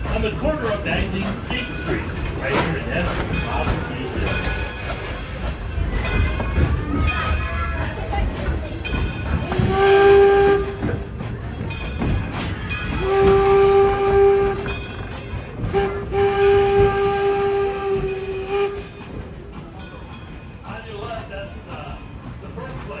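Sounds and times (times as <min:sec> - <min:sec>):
train rumbling: 0:00.0 - 0:23.0
steam locomotive whistle: 0:09.4 - 0:11.1, 0:12.9 - 0:15.0, 0:15.6 - 0:19.0.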